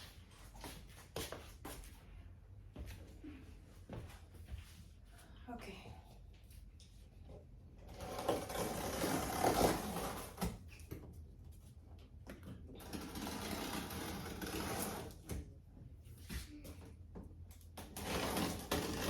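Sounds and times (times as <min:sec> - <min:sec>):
cardboard packaging scraping: 0:07.8 - 0:10.5, 0:12.8 - 0:15.2, 0:17.9 - 0:19.0.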